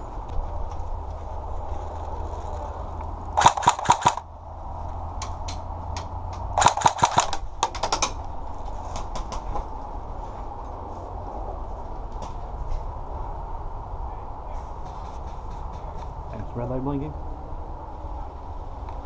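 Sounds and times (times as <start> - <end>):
airsoft gun shots: 3.4 - 4.2, 6.6 - 8.0.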